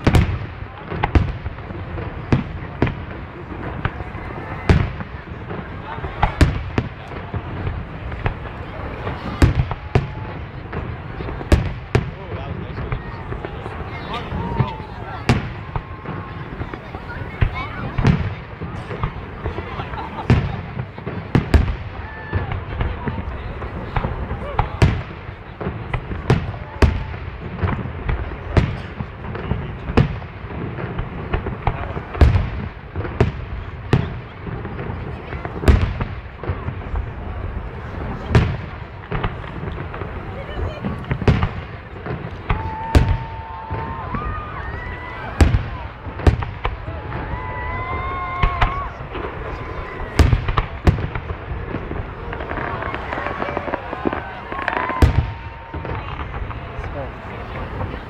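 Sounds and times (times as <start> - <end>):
fireworks bursting: 0.0 - 58.0.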